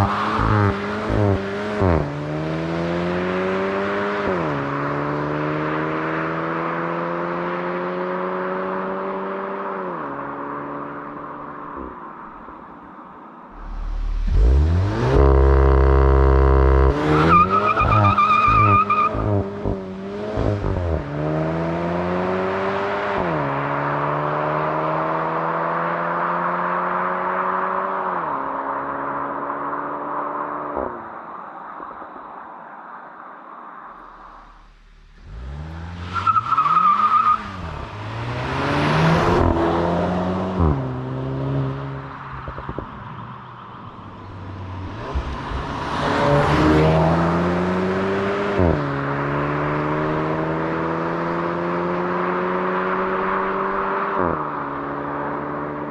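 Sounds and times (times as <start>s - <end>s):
car engine revving and upshifting: 0.0s - 12.4s, 13.6s - 31.1s, 34.0s - 55.9s
tyre squeal: 14.2s - 19.4s.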